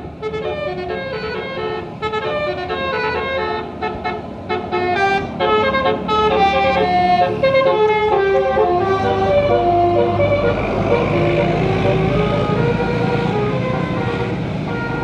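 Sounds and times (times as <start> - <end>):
musical air horn melody: 0.0 - 15.0.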